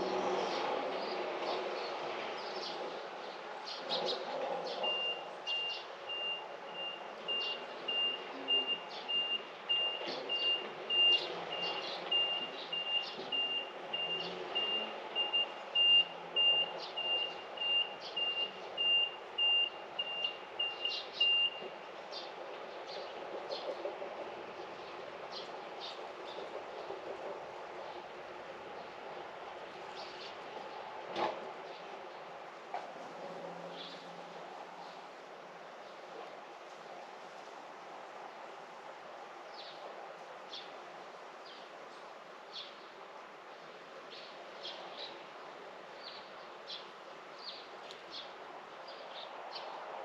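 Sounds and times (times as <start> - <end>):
reversing alarm beeping: 4.8 - 21.7.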